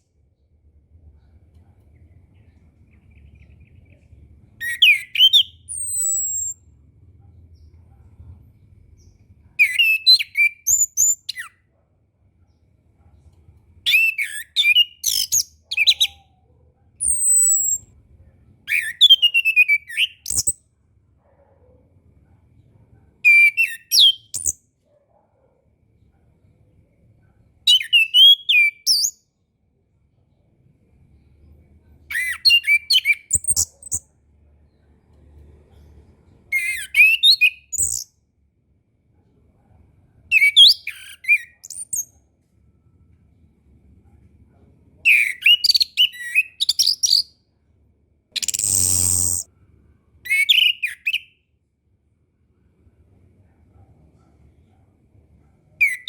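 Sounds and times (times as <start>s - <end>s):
thrush singing whistles and trills: 4.6s - 6.6s, 48.4s - 49.5s.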